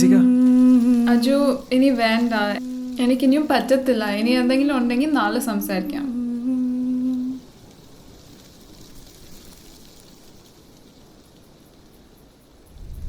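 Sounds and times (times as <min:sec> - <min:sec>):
low hummed note: 0:00.0 - 0:01.2, 0:02.3 - 0:03.3, 0:06.0 - 0:07.4
soft steady hiss: 0:00.0 - 0:13.0.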